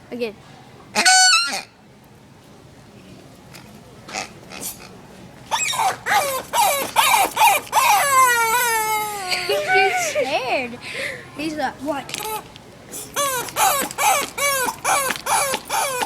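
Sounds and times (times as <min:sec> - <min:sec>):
dog toy squealing: 0:01.0 - 0:01.8, 0:05.5 - 0:09.7, 0:12.2 - 0:16.0.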